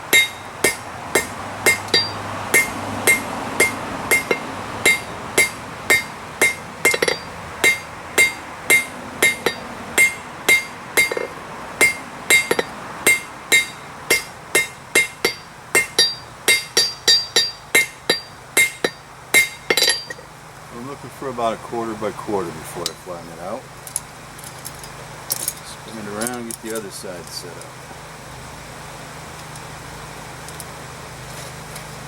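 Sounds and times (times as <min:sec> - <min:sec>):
hammer striking hot steel on anvil: 0:00.0 - 0:20.3.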